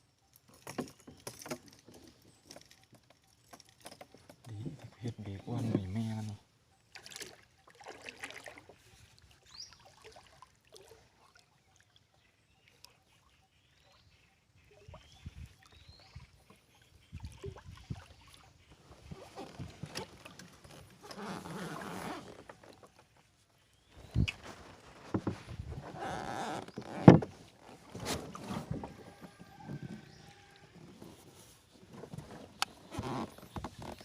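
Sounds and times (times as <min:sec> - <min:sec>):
knocks and thuds of boat gear: 0:24.1 - 0:31.2, 0:31.8 - 0:34.0.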